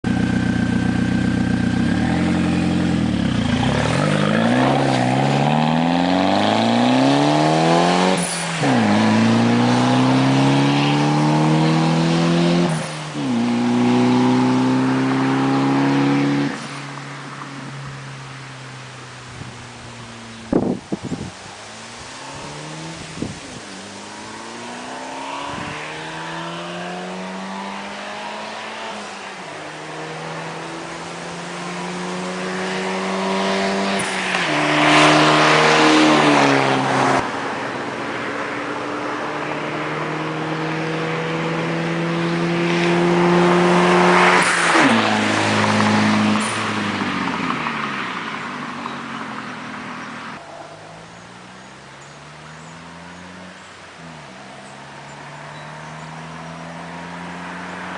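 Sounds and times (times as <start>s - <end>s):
car engine accelerating past: 0.2s - 17.2s, 22.0s - 37.5s, 39.0s - 50.4s.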